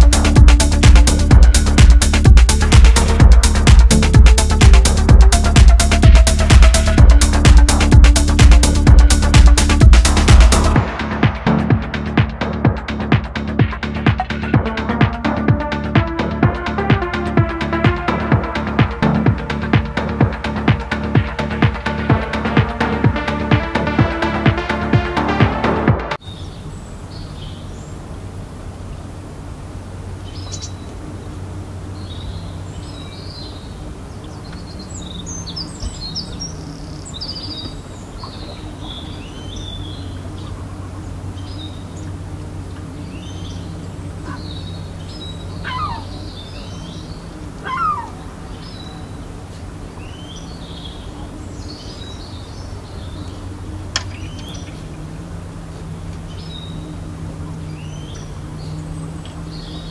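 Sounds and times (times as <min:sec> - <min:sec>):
small birds chirping: 0:00.0 - 0:10.9, 0:12.4 - 0:59.9
steady low hum: 0:00.0 - 0:59.9
louder falling bird calls: 0:44.2 - 0:46.9, 0:47.6 - 0:48.4.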